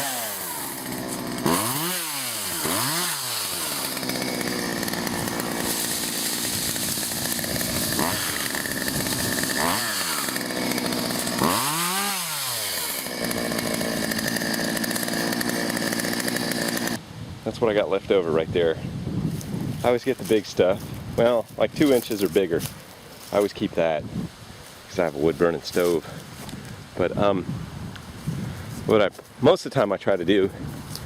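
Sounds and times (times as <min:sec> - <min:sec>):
chainsaw revving: 0:00.0 - 0:17.0.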